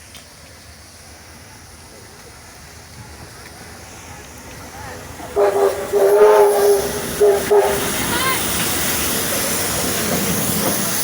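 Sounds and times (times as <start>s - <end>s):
steam hissing: 0.7s - 11.0s
steam locomotive whistle blasts: 5.4s - 8.5s.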